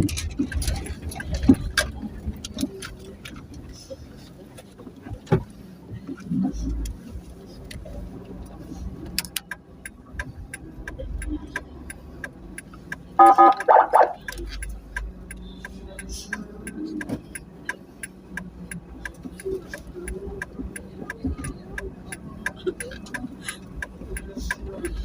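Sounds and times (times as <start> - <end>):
steady ticking clicks: 0.0 - 4.0, 4.6 - 25.0
low vehicle rumble: 0.0 - 25.0
vehicle horn honks: 13.2 - 14.2.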